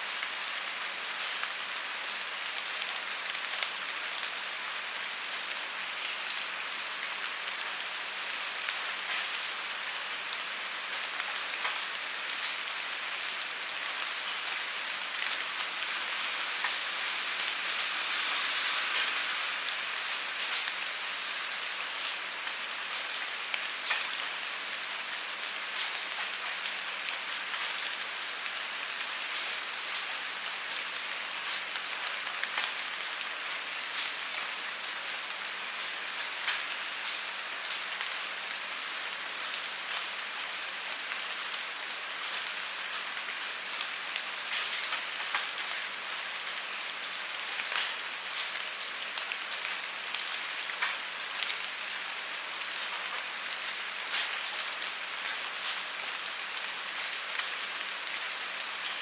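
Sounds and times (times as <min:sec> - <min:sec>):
steady rain hiss: 0:00.0 - 0:59.0
raindrop ticks: 0:23.8 - 0:24.2, 0:32.4 - 0:34.1, 0:44.5 - 0:45.8, 0:50.1 - 0:51.6.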